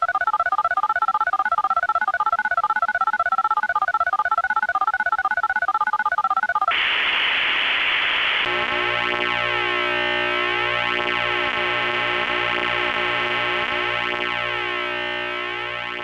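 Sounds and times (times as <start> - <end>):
static hiss: 6.7 - 15.6
buzzing drone with phasing sweep: 8.4 - 16.0
pulsing two-pitch electronic tone: 8.4 - 16.0.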